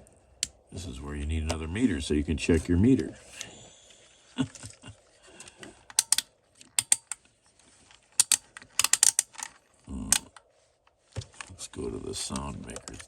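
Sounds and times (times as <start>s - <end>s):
rotary switch clicking: 5.9s - 7.2s, 8.2s - 9.5s.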